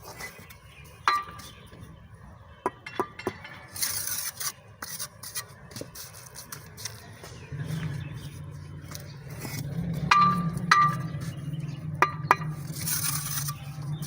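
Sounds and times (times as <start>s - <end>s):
trowel clinking on bricks: 0.0s - 1.6s, 2.7s - 7.2s, 8.9s - 14.0s
trowel scraping mortar: 0.0s - 1.6s, 3.5s - 14.0s.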